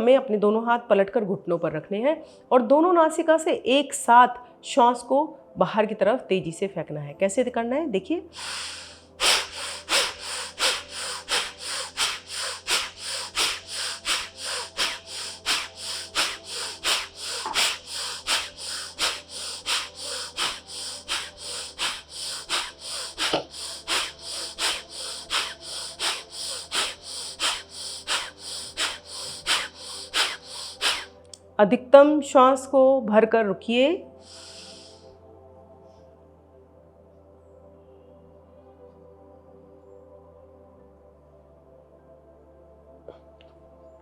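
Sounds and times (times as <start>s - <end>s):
rapid forceful nasal exhalations: 8.4s - 31.2s, 34.2s - 35.1s.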